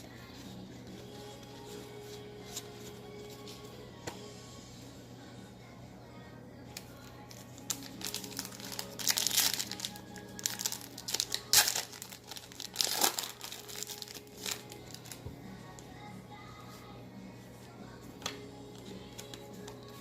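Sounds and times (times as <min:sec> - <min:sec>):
wrapper crinkling and tearing: 0:07.6 - 0:15.2.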